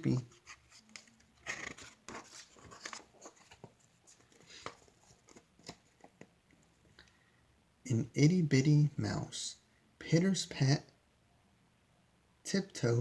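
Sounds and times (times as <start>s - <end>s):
paper pages rustling: 0.0s - 6.8s.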